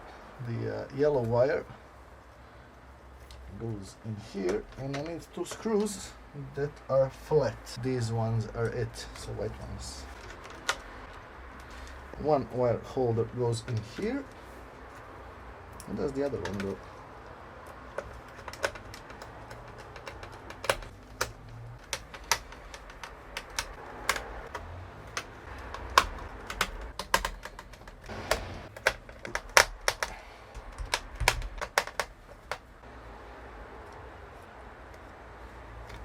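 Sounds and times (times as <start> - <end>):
plastic parts clicking and tapping: 4.3 - 6.0, 8.4 - 12.3, 13.2 - 15.1, 15.7 - 32.9.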